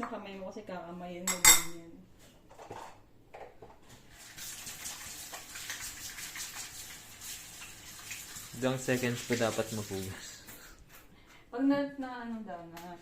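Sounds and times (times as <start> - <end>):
hands washing under water: 4.0 - 11.1
water running from a tap: 4.1 - 10.8.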